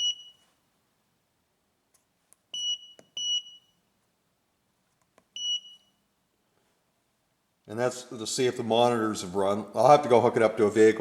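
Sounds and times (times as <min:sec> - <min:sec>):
short high keypad beeps: 0:02.5 - 0:03.8, 0:05.4 - 0:05.9.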